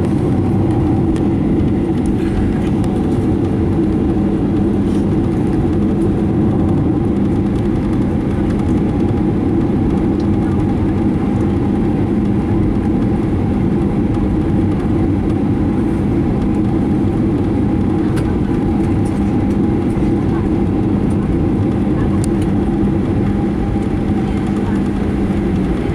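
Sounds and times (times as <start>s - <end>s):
jet engines idling drone: 0.1s - 25.9s.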